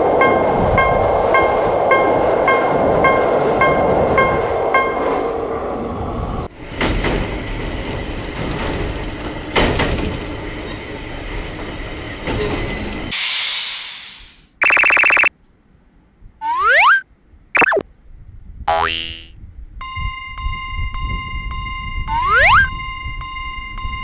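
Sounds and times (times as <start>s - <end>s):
train rumbling on rails: 0.0s - 13.8s
burst of hiss: 13.1s - 14.5s
buzzy electronic tone: 16.4s - 17.0s, 17.6s - 17.8s, 22.1s - 22.7s
cartoon boing sound effect: 16.4s - 17.0s, 17.6s - 17.8s, 18.7s - 19.3s, 22.1s - 22.7s.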